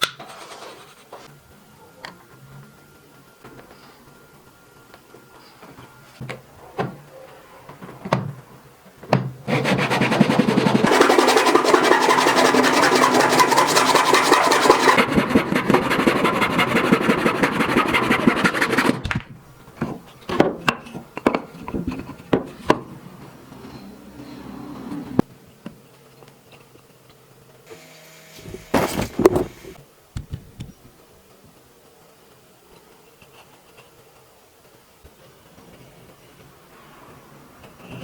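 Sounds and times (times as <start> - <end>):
handsaw cutting wood: 9.5 - 19.1.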